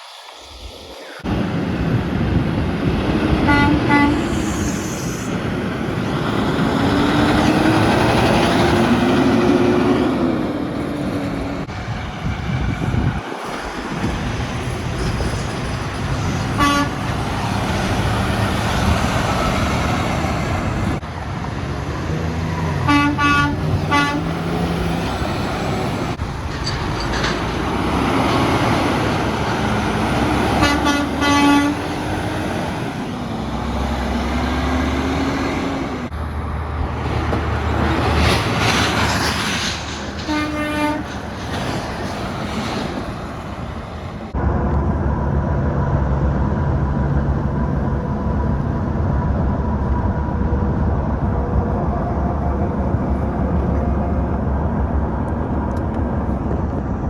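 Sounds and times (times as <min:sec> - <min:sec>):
heavy highway traffic: 0:00.0 - 0:57.0
truck air horn toots: 0:03.4 - 0:05.3, 0:16.5 - 0:17.2, 0:22.8 - 0:24.8, 0:30.0 - 0:32.3, 0:40.2 - 0:41.2.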